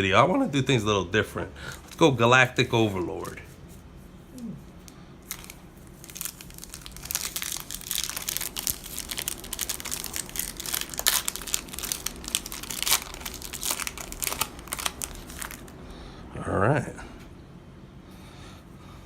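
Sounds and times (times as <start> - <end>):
foil wrapper tearing and crinkling: 5.2 - 15.8.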